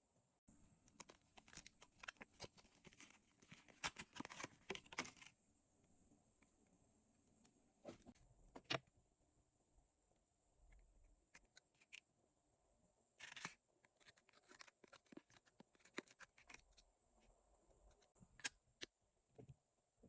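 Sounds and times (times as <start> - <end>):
packaging tearing and crinkling: 13.2 - 16.6.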